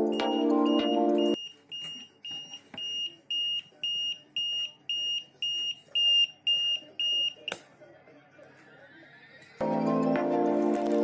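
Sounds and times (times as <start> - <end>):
high-pitched alarm beeps: 0.0 - 7.5.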